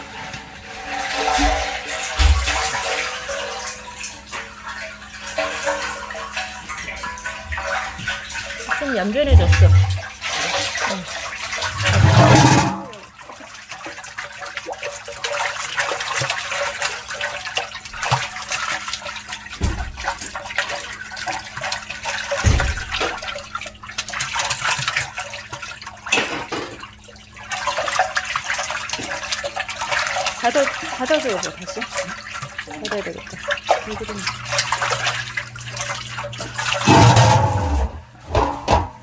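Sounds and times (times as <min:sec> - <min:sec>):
water bubbling and sloshing: 0:00.0 - 0:39.0
dull thumps: 0:09.2 - 0:10.1, 0:36.9 - 0:39.0.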